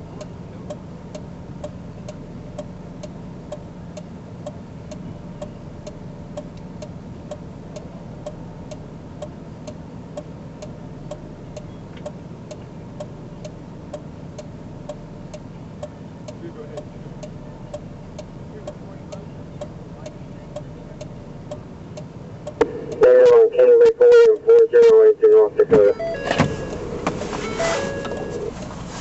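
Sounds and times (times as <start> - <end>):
car indicator ticking: 0.0 - 28.8
low vehicle hum: 0.0 - 29.0.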